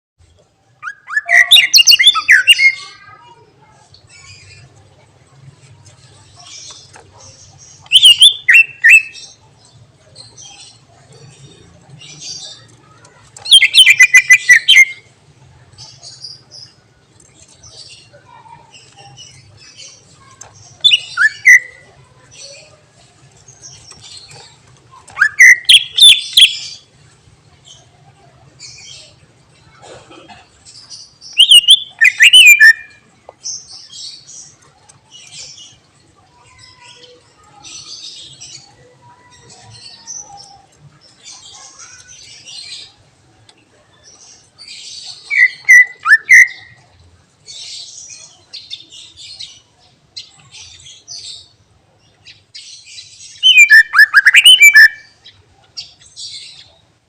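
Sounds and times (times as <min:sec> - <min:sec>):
bird whistled song phrases: 0:00.8 - 0:02.9, 0:07.9 - 0:09.2, 0:13.5 - 0:15.0, 0:20.8 - 0:21.8, 0:25.1 - 0:26.6, 0:31.3 - 0:33.0, 0:45.3 - 0:46.8, 0:53.4 - 0:55.2
bird chatter of twitters: 0:12.2 - 0:15.0.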